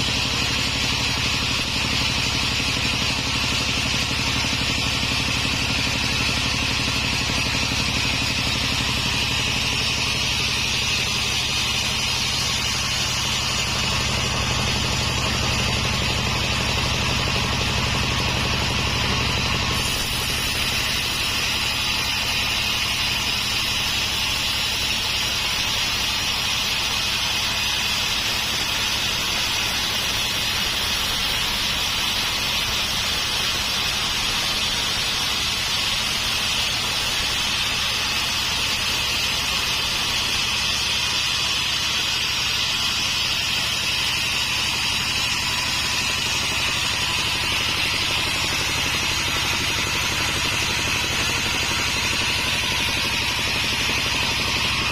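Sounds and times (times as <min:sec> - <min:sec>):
sawmill cutting log: 0:00.0 - 0:54.9.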